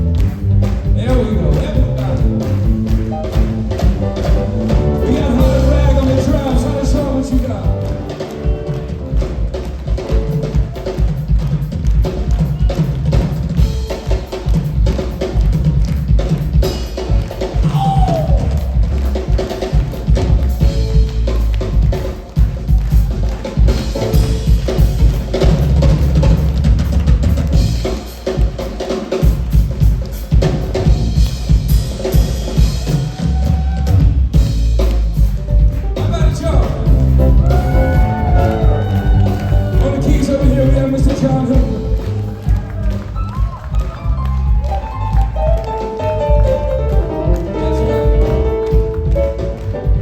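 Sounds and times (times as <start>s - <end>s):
band's low end: 0.0s - 12.0s, 30.4s - 50.0s
drum kit played hard: 0.0s - 50.0s.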